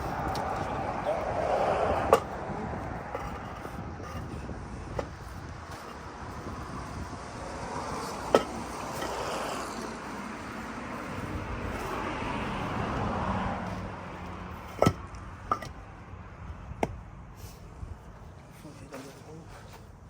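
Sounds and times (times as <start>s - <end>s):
vehicle passing: 0.0s - 18.0s.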